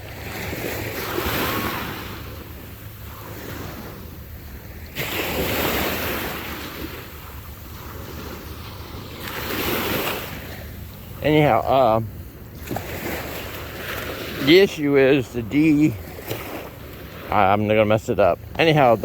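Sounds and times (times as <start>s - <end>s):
small waves breaking on sand: 0.0s - 19.0s
wind rumbling on microphone: 0.0s - 19.0s.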